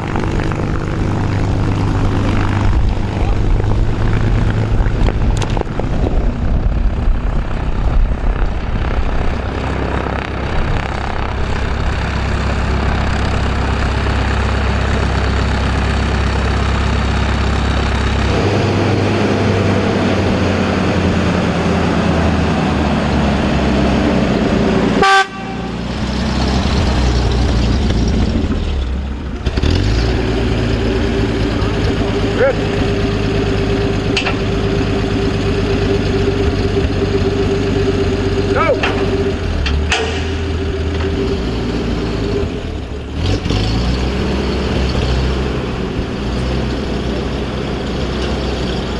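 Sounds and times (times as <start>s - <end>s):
propeller plane engine droning: 0.0s - 48.9s.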